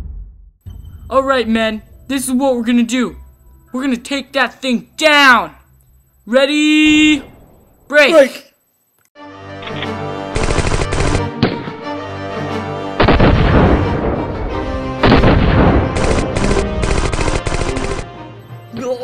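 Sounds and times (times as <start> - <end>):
background music: 9.2 - 19.0
rapid gunfire: 10.3 - 11.7, 13.0 - 14.2, 15.0 - 18.1.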